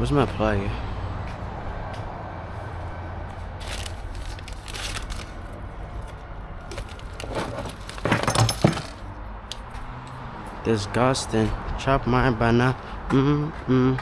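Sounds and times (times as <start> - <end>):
rustling of small parts: 3.6 - 9.1
metallic clinks and rattles: 6.7 - 9.1.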